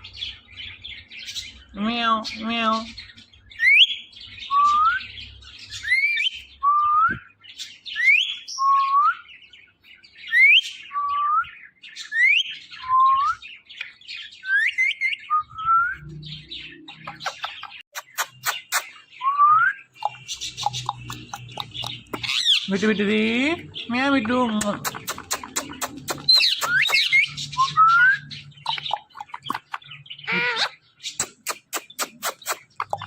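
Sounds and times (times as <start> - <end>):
parrot clicks and chatter: 16.9 - 19.0, 20.0 - 22.7, 24.2 - 27.4, 28.6 - 33.0.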